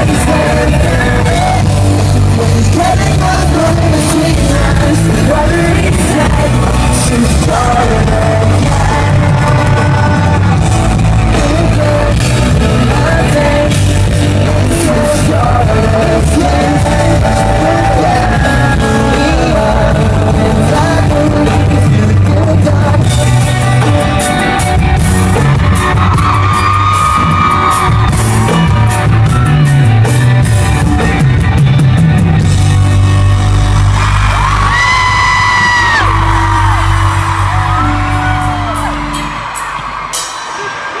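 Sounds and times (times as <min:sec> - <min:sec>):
person singing: 0:00.0 - 0:24.4
pop-rock band playing live: 0:00.0 - 0:41.0.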